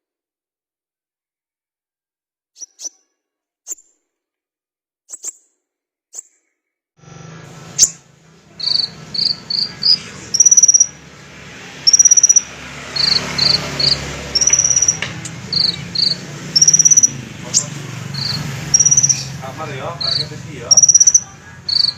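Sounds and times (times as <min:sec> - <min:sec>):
bird chirping and trilling: 0:02.6 - 0:03.0, 0:07.7 - 0:21.9.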